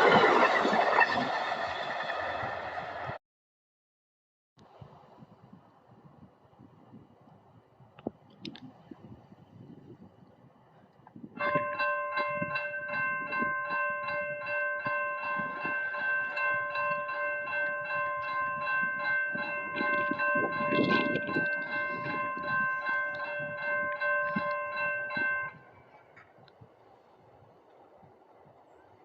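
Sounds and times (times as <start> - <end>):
locomotive air horn chord: 11.4 - 18.4
locomotive bell ringing: 11.4 - 25.9.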